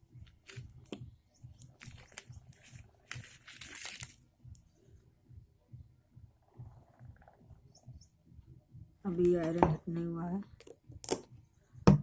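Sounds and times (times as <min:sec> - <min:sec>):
crinkling rustle: 0:01.6 - 0:04.2.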